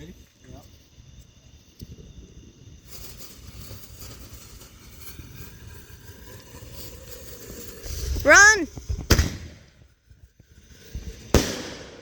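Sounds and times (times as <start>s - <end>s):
firework fuse hissing: 0.0s - 12.0s.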